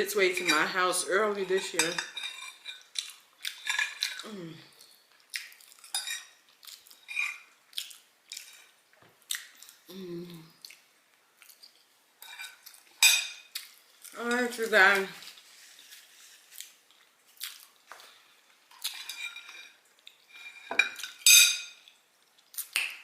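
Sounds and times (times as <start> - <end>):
utensils clinking on a plate: 0.3 - 2.9, 3.5 - 4.2, 5.8 - 6.4, 12.2 - 13.5, 18.9 - 21.8
person humming: 4.2 - 4.7, 9.9 - 10.6.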